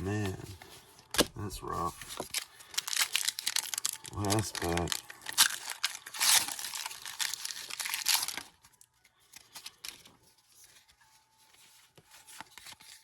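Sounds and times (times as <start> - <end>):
foil pack tearing and crinkling: 2.0 - 8.6.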